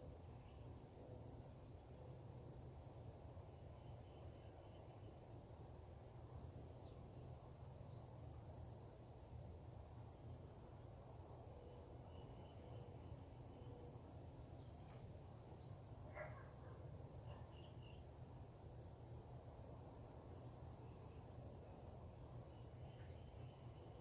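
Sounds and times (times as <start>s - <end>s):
faint birds chirping: 0.1s - 24.0s.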